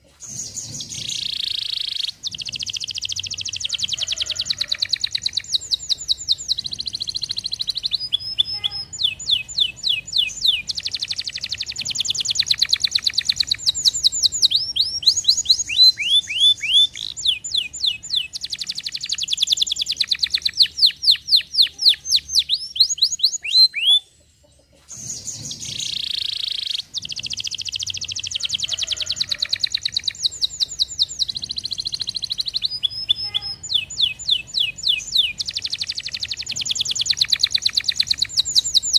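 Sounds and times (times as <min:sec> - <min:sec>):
canary singing trills: 0:00.0 - 0:38.9.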